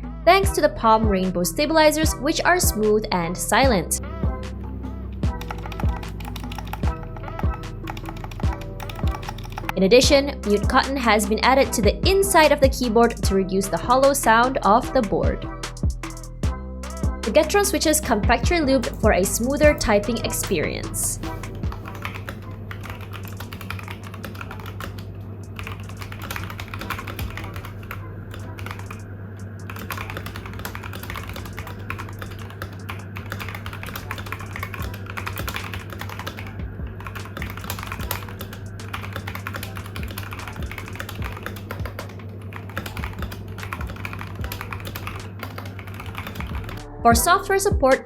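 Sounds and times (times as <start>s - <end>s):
fast typing on mechanical keyboard: 5.4s - 9.8s, 10.4s - 11.0s, 21.8s - 25.0s, 25.6s - 29.0s, 29.6s - 46.8s.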